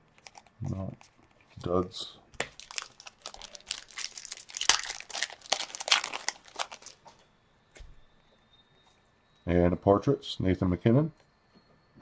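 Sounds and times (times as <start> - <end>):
card pack wrapper crinkling: 0.0 - 1.8, 2.4 - 7.0.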